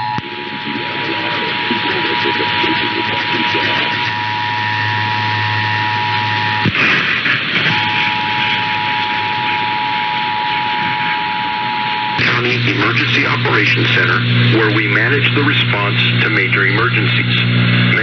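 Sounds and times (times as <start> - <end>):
two-tone alert signal: 7.7 - 12.4.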